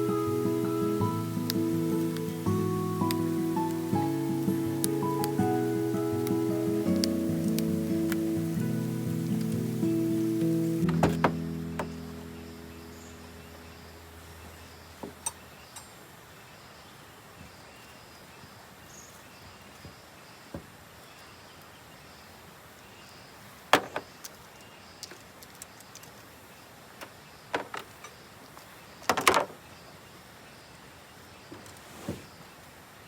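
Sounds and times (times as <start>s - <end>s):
camping gear knocks and clicks: 10.8s - 11.9s, 23.7s - 24.4s, 29.0s - 29.6s.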